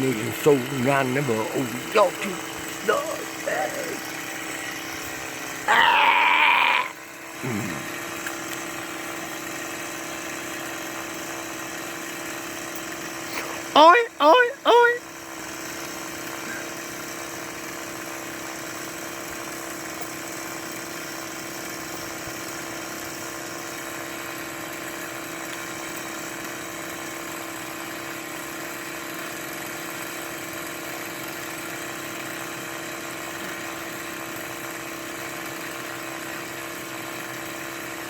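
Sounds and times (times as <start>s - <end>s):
engine droning steadily: 0.0s - 38.0s.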